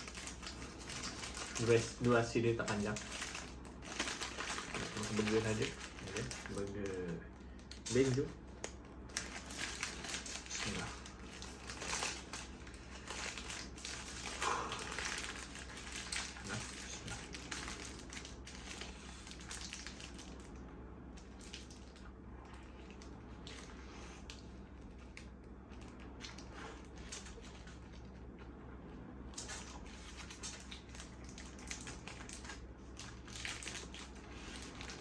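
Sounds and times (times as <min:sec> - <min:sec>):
paper wrapper crinkling: 0:00.0 - 0:20.6, 0:29.3 - 0:35.0
person chewing burger: 0:09.2 - 0:19.4.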